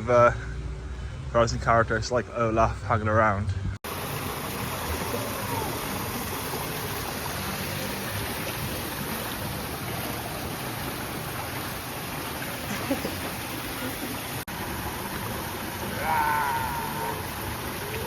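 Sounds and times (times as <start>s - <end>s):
running and splashing water: 3.8s - 18.0s.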